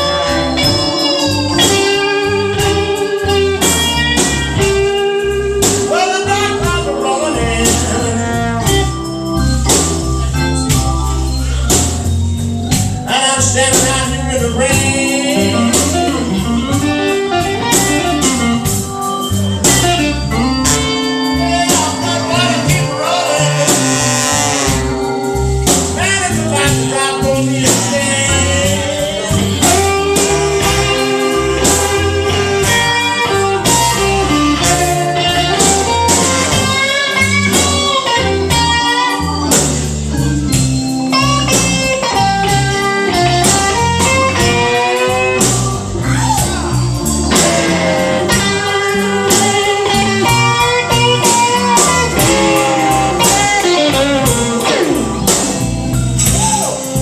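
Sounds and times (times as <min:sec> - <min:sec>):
electric guitar lead with bent notes: 0:00.0 - 0:57.0
live blues band playing: 0:00.0 - 0:57.0.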